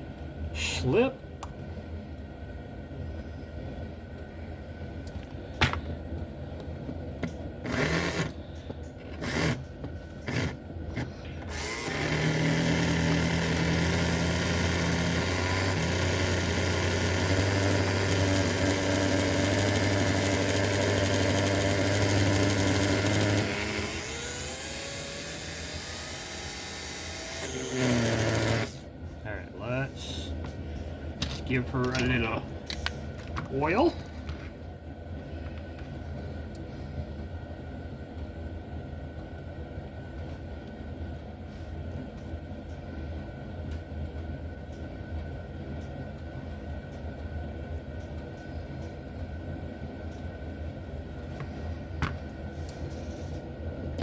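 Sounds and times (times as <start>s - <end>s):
slot car motor spinning: 11.5s - 28.9s.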